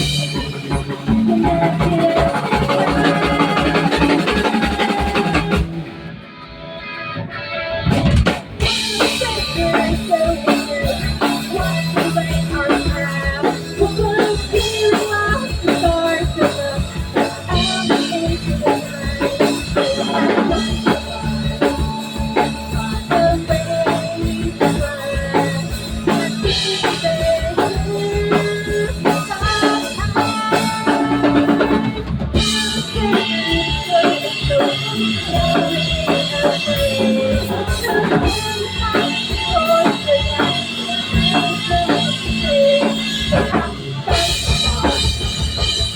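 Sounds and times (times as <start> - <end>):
band music with drums and guitar: 0.0 - 45.9.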